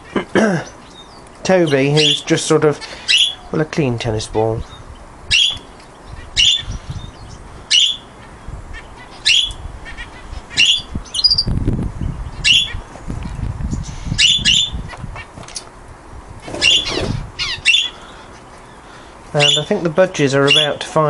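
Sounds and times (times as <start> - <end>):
sharp bird calls: 0.0 - 3.6, 4.6 - 11.5, 12.2 - 12.9, 13.7 - 15.4, 16.4 - 20.9
falling bird squawk: 2.8 - 3.5, 5.3 - 6.9, 7.6 - 11.5, 14.1 - 15.4, 16.4 - 19.7.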